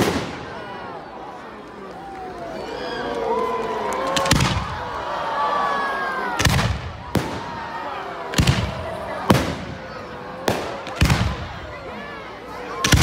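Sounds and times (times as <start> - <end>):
fireworks bangs: 0.0 - 0.6, 4.2 - 4.8, 6.4 - 11.7
crowd calling out: 0.0 - 13.0.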